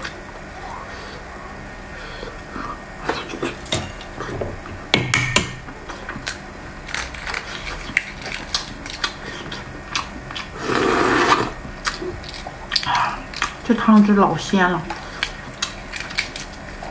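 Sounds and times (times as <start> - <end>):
eggshell clicks and crackles: 6.2 - 10.5, 15.2 - 16.6
mouth eating noises: 7.4 - 13.7.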